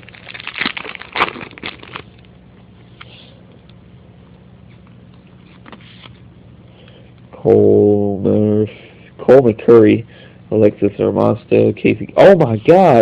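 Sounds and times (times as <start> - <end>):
foil wrapper crinkling: 0.0 - 2.3
low steady hum: 0.0 - 13.0.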